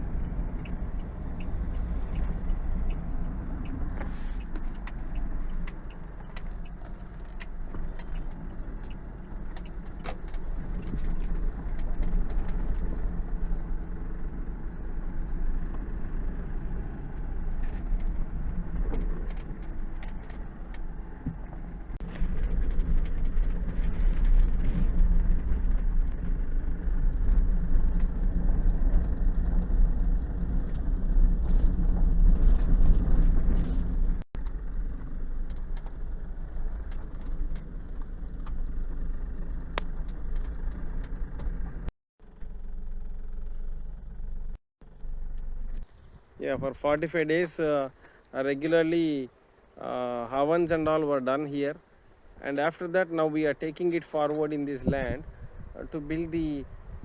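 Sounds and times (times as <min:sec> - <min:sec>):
car engine and road rumble: 0:00.0 - 0:57.0
small clicks and rattles: 0:00.6 - 0:14.0, 0:17.1 - 0:29.2.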